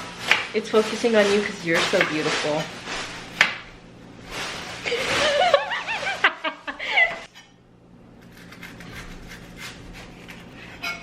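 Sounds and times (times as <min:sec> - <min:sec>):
woman giggling: 0:04.9 - 0:07.3.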